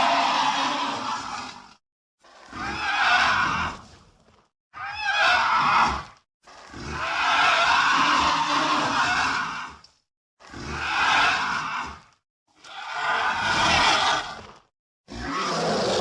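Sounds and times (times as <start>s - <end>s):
monster roars: 10.4s - 14.4s, 15.1s - 16.0s.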